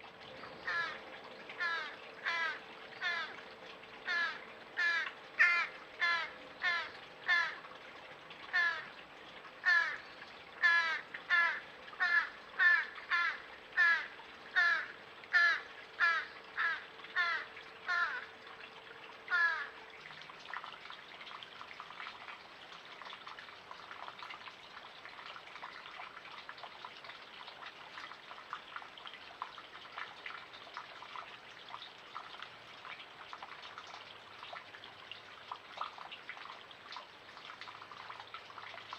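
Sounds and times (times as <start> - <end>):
creek water rushing: 0.0 - 38.9
faint ticks and drips: 0.0 - 38.9
harsh crow-like bird call: 0.7 - 1.0, 1.6 - 3.3, 4.1 - 7.6, 10.6 - 18.3, 19.3 - 19.7.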